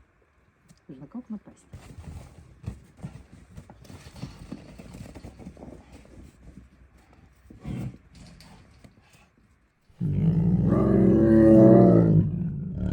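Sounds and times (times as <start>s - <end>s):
tigers scuffling: 1.6s - 9.7s
tiger grunt: 10.0s - 12.9s.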